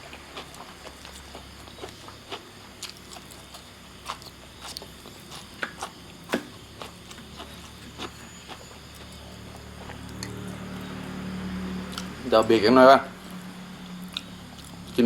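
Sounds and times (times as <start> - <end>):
person chewing food: 0.0 - 12.2, 13.2 - 15.0.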